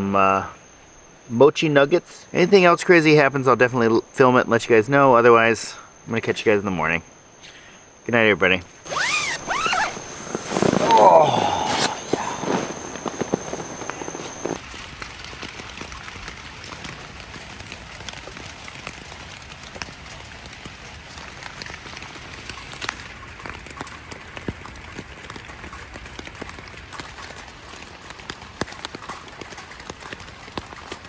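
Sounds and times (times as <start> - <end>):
rain pattering: 14.6 - 31.0.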